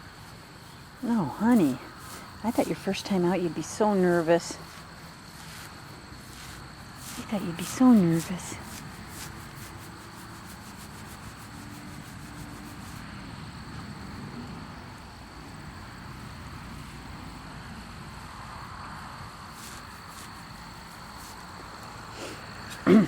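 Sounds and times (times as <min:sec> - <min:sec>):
fast high insect ticking: 0:00.0 - 0:13.4
insects trilling: 0:00.0 - 0:23.0.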